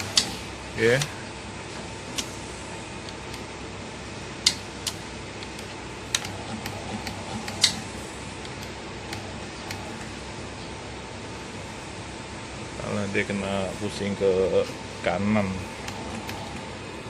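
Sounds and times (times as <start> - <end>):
stamping machine humming: 1.8 - 10.8, 15.6 - 17.0
machine mechanism sharp clicks: 4.4 - 7.8.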